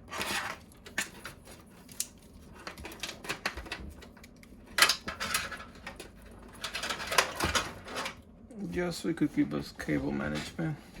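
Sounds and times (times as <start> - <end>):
rustling scrape: 0.0 - 1.9
cables clicking and rattling: 0.3 - 8.2.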